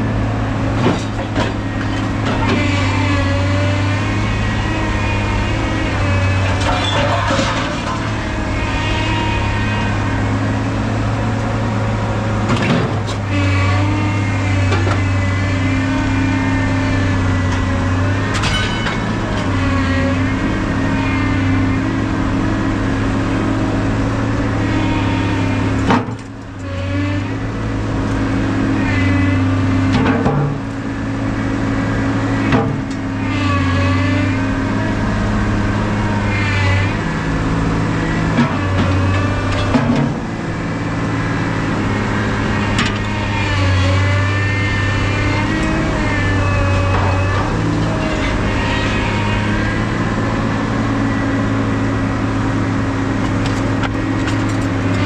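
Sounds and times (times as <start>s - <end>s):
engine running with whine: 0.0s - 55.0s
knocks and clanks: 18.3s - 19.5s, 38.4s - 40.2s.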